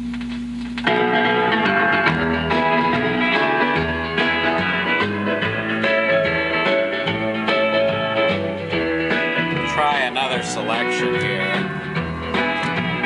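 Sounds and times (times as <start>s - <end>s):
country music with guitar: 0.8s - 13.0s.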